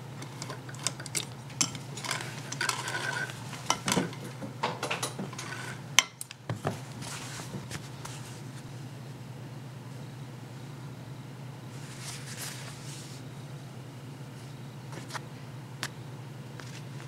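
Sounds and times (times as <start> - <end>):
steady low hum: 0.0 - 17.0
small metal parts clicking: 0.2 - 3.8.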